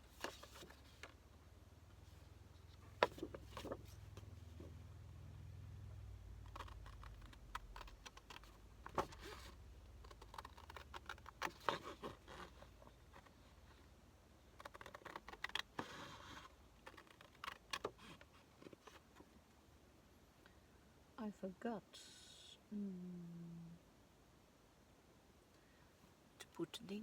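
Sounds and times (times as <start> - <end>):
paper and cards handled on desk: 0.1 - 1.1, 2.9 - 4.7.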